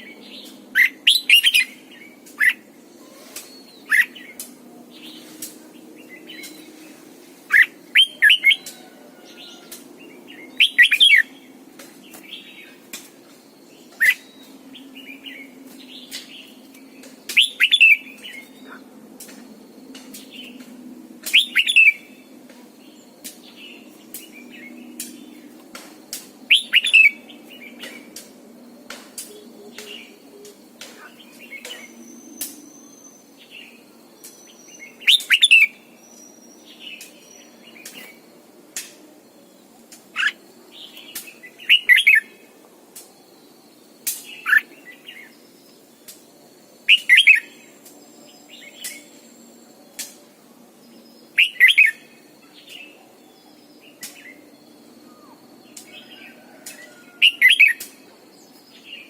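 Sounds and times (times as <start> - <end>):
bird singing whistles: 0.8 - 1.7, 17.3 - 18.0, 21.3 - 22.0, 26.5 - 27.2, 34.5 - 35.7, 46.9 - 47.5, 51.4 - 52.0.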